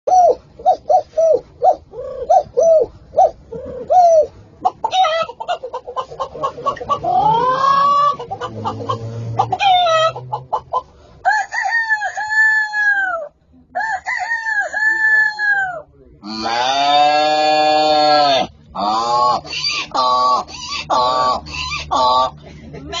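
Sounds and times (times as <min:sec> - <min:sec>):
man imitating chicken clucks: 0:00.1 - 0:10.9, 0:14.3 - 0:23.0
man imitating rooster crowing: 0:07.1 - 0:08.2, 0:11.3 - 0:22.4.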